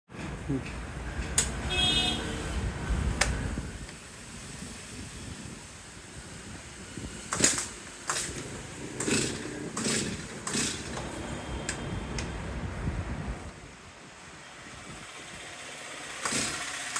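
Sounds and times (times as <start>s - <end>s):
sharp click: 1.3s - 1.6s
chainsaw starter cord yanks: 7.3s - 11.8s, 16.2s - 16.9s.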